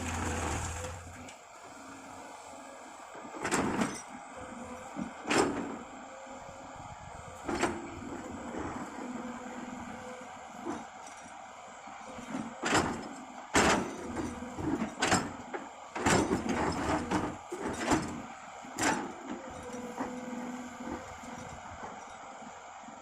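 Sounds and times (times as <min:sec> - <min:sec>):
bucket clanking and scraping: 0:00.0 - 0:01.1
excavator diesel engine running: 0:00.0 - 0:23.0.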